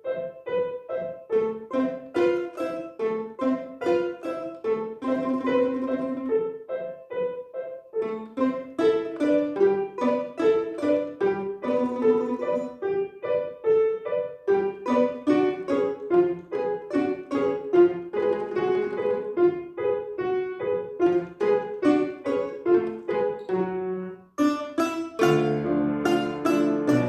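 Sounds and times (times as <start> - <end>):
piano duet music: 0.0 - 27.0.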